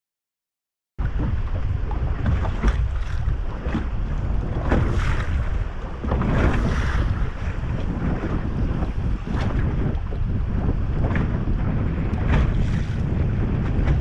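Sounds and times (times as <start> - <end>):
waves splashing against boat: 1.0 - 14.0
wind buffeting microphone: 1.0 - 14.0.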